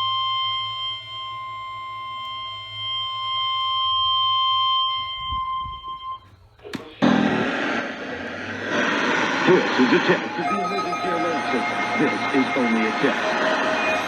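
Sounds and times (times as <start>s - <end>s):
high alarm tone: 0.0s - 6.2s, 8.7s - 14.0s
loud radio hiss: 6.7s - 14.0s.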